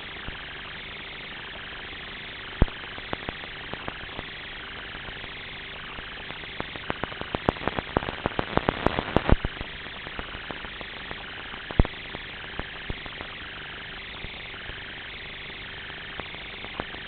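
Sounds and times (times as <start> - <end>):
steady rushing noise: 2.6 - 17.0.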